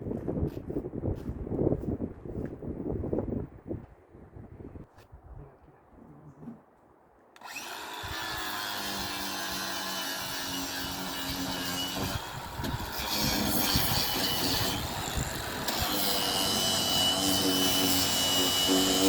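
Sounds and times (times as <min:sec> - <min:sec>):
power tool cutting wood: 0:07.4 - 0:19.0.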